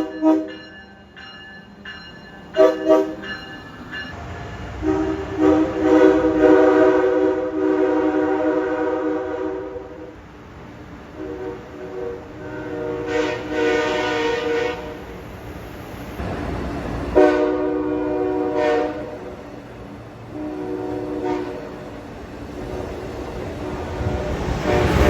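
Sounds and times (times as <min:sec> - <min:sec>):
train air horn blasts: 0:00.0 - 0:00.5, 0:02.6 - 0:03.2, 0:04.8 - 0:10.1, 0:11.2 - 0:15.1, 0:17.2 - 0:19.3, 0:20.3 - 0:21.9, 0:23.4 - 0:25.0
train rushing by: 0:00.0 - 0:25.0.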